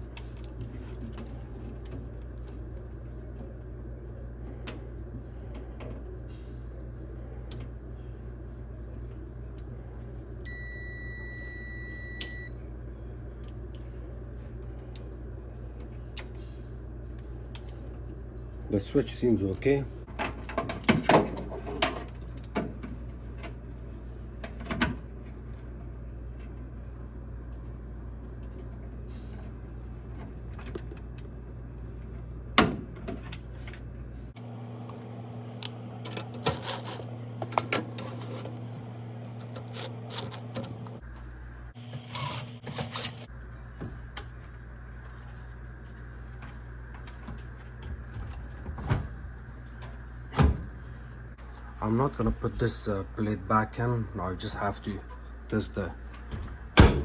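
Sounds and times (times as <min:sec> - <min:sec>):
steady low hum: 0:00.0 - 0:20.7, 0:21.4 - 0:57.0.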